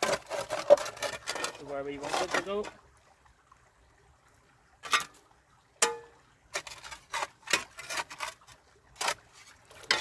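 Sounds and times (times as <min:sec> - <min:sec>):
spade knocking on stones: 0:05.8 - 0:06.1.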